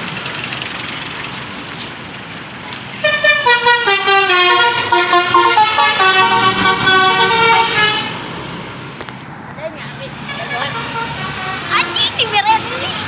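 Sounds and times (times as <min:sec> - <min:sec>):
bus musical horn playing a tune: 0:03.0 - 0:08.4, 0:10.3 - 0:12.2.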